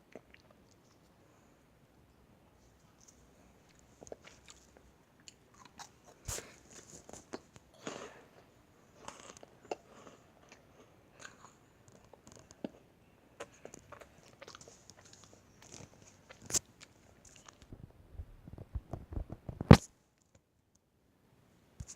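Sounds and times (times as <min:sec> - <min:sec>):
crisp cookies being chewed: 0:00.0 - 0:01.2, 0:02.8 - 0:17.8.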